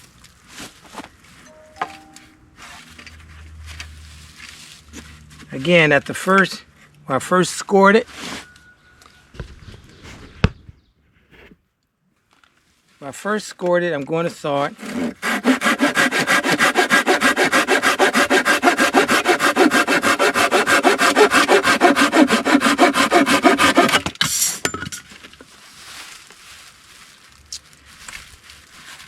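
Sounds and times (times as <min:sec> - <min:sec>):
hand saw cutting log: 0:14.6 - 0:24.6.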